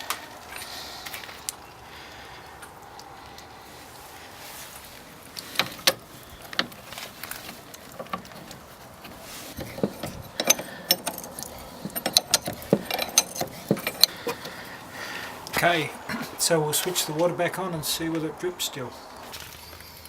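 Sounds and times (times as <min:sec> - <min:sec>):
metal tools clicking and clinking: 0:05.4 - 0:14.6.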